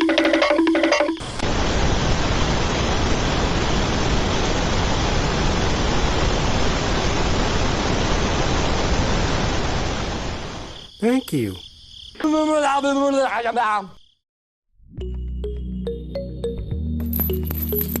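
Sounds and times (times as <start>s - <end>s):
steady rushing noise: 1.4s - 10.6s.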